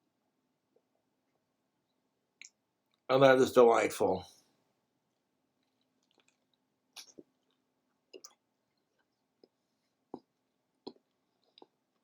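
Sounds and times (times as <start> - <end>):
chewing and mouth sounds: 5.6 - 12.0.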